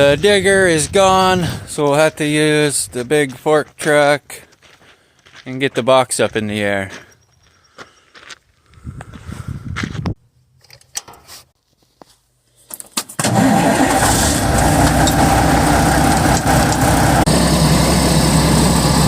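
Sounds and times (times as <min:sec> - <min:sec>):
forklift engine starting and idling: 0:13.1 - 0:19.0.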